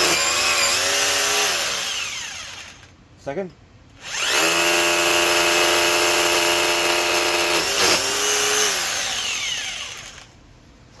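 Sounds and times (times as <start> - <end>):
rotary hammer drilling: 0.0 - 2.9, 4.0 - 10.3.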